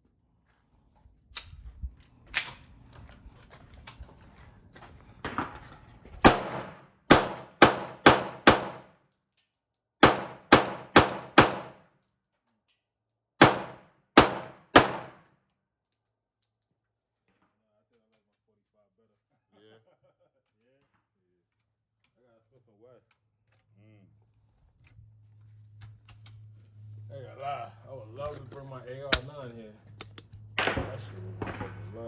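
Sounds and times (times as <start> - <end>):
gunshots with ringing echo: 6.2 - 8.9, 10.0 - 11.8, 13.4 - 15.2, 30.6 - 32.0.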